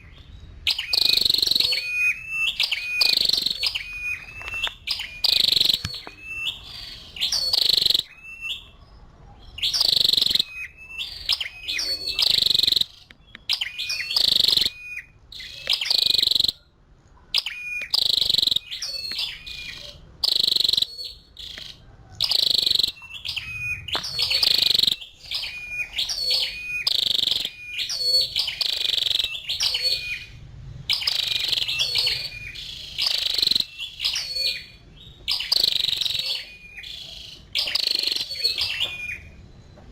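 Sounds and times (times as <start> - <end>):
bird calling high sharp notes: 0.0 - 8.8, 9.6 - 16.7, 17.4 - 39.4.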